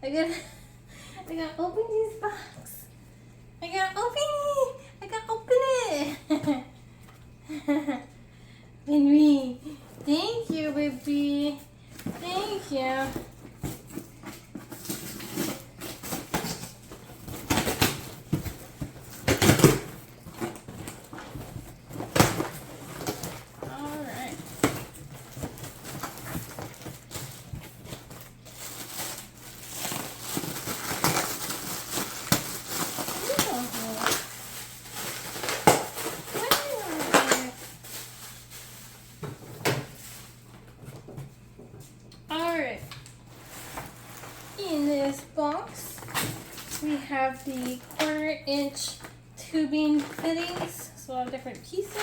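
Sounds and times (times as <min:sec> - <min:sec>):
cardboard rustling and scraping: 0:12.0 - 0:41.8, 0:43.3 - 0:46.8.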